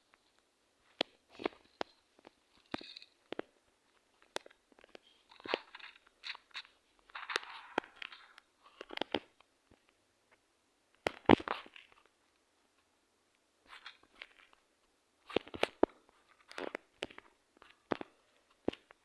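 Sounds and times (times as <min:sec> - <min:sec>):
crunching and clicking: 0:00.1 - 0:10.0.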